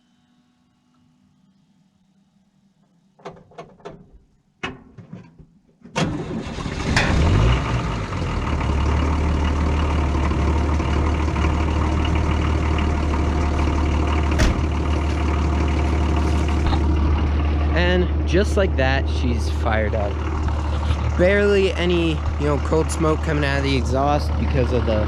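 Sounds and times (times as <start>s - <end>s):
diesel engine starting and idling: 5.9s - 25.0s.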